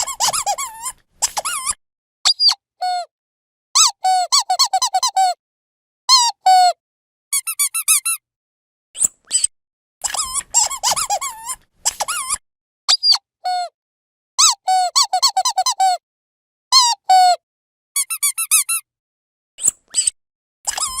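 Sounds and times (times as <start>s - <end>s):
squeaky dog toy squeaking: 0.0s - 3.1s, 3.8s - 5.4s, 6.1s - 8.2s, 9.3s - 13.7s, 14.4s - 16.0s, 16.8s - 17.4s, 18.0s - 18.8s, 19.6s - 20.1s, 20.7s - 21.0s.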